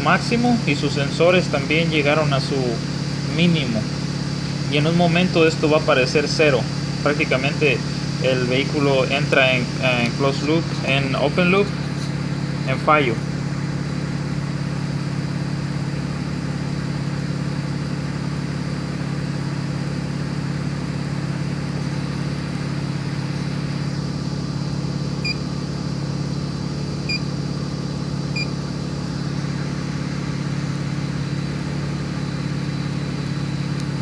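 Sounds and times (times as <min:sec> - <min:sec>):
car engine running steadily: 0:00.0 - 0:34.0
short electronic beeps: 0:25.2 - 0:25.4, 0:27.0 - 0:27.3, 0:28.3 - 0:28.6.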